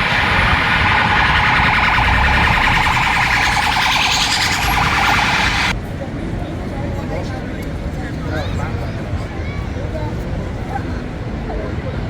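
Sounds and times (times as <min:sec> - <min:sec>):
pulsing electronic siren: 0:00.0 - 0:05.7.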